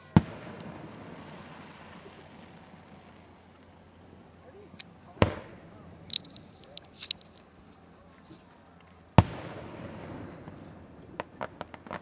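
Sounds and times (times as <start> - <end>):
firework crackling pops: 0.0 - 3.8, 4.8 - 7.6, 9.2 - 12.0
firework shell burst booming: 5.2 - 6.4.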